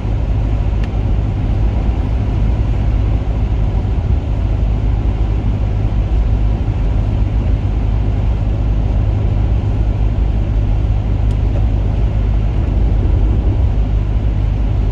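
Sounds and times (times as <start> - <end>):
car road and engine rumble: 0.0 - 14.9.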